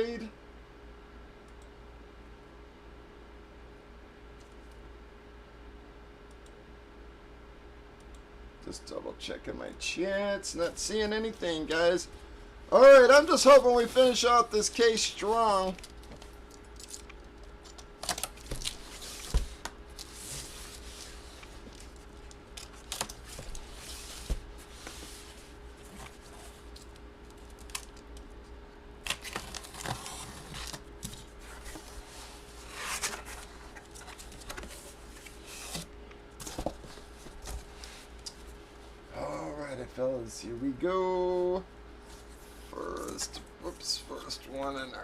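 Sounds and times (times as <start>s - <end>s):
faint steady hum: 0.0s - 45.0s
packaging tearing and crinkling: 15.6s - 20.2s, 29.0s - 31.1s
packaging clicks: 15.7s - 18.8s.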